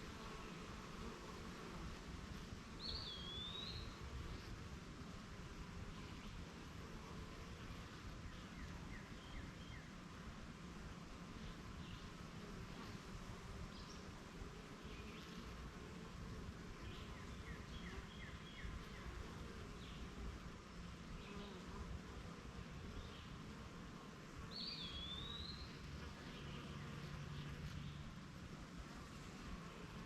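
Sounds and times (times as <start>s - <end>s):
honeybees buzzing: 0.0s - 30.0s
bird chirping: 24.6s - 27.0s.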